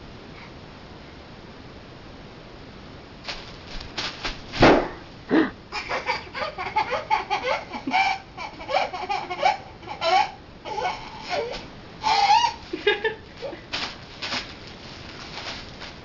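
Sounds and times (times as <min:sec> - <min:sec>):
bubble wrap popping: 0:03.2 - 0:05.1, 0:12.7 - 0:16.0
small child giggling: 0:04.9 - 0:13.7.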